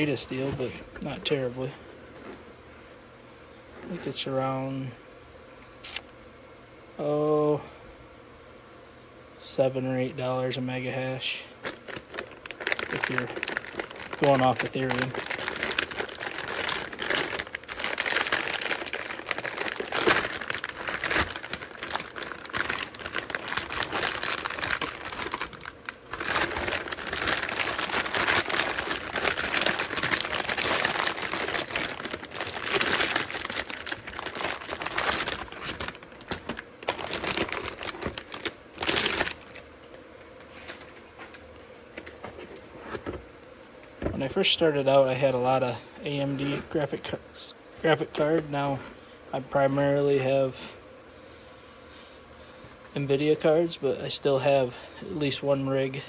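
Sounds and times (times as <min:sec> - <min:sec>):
plastic packaging crinkling: 0:00.0 - 0:02.5, 0:11.6 - 0:43.2, 0:47.8 - 0:50.6.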